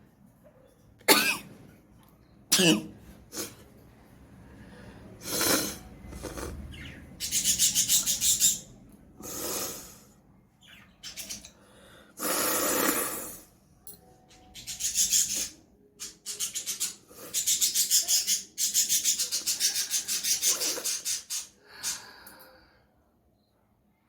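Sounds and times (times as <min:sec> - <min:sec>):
person blowing through nose: 0:12.2 - 0:13.4.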